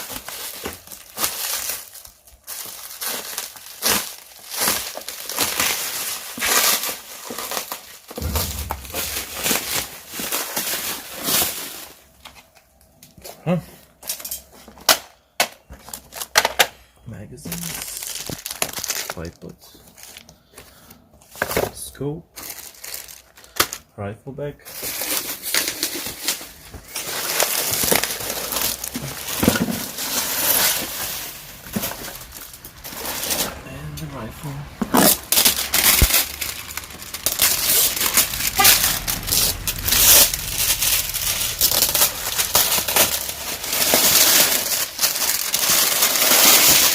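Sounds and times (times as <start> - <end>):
packaging crinkling: 0.0 - 8.2, 17.5 - 20.3, 22.4 - 23.8, 24.8 - 46.9
low handling rumble: 8.2 - 10.3, 28.3 - 45.8.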